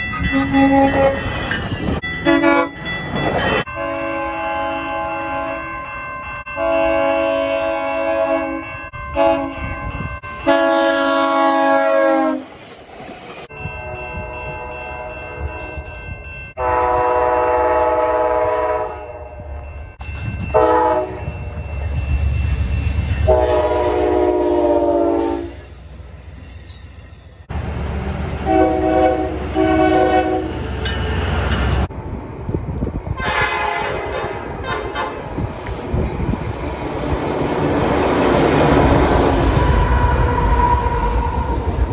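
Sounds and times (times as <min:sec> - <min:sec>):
passing train rumble: 0:00.0 - 0:41.9
train air horn blasts: 0:00.3 - 0:01.2, 0:02.2 - 0:02.8, 0:06.6 - 0:09.6, 0:10.4 - 0:12.5, 0:16.6 - 0:19.5, 0:20.5 - 0:21.2, 0:23.2 - 0:25.7, 0:28.4 - 0:30.8, 0:33.2 - 0:35.4.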